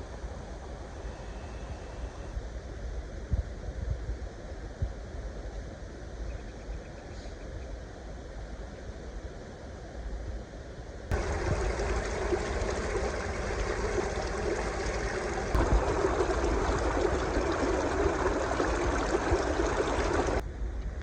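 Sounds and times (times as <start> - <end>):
stream water rushing: 11.1 - 20.4.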